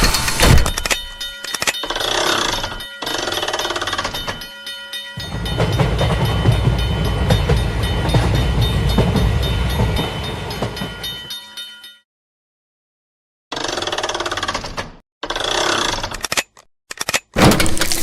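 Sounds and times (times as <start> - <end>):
crossing warning bell ringing: 0.1 - 12.0
train rumbling past: 5.2 - 11.3.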